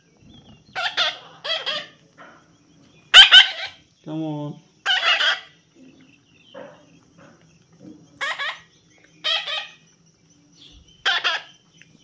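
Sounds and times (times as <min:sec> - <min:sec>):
parrot squawking: 0:00.8 - 0:02.0, 0:03.1 - 0:03.8, 0:04.8 - 0:05.6, 0:08.2 - 0:09.8, 0:11.0 - 0:11.5.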